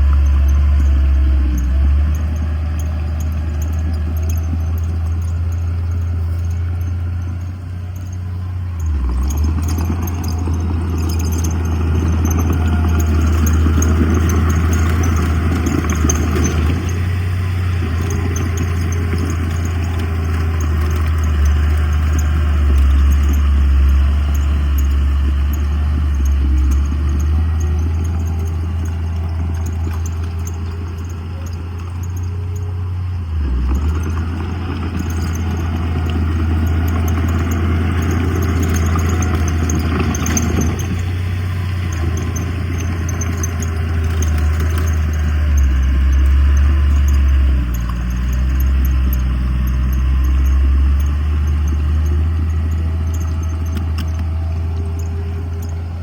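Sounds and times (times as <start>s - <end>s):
diesel machinery engine drone: 0.0s - 56.0s
faint light clatter: 0.0s - 56.0s.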